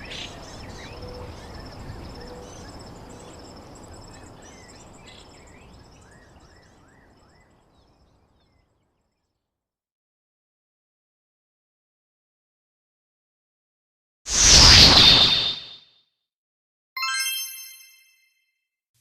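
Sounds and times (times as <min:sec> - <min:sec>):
birds chirping: 0:00.0 - 0:08.7.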